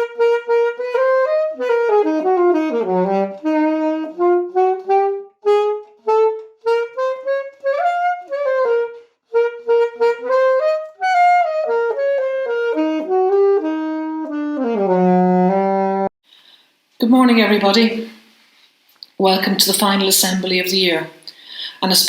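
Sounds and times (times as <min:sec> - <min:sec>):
solo wind instrument melody: 0:00.0 - 0:16.1.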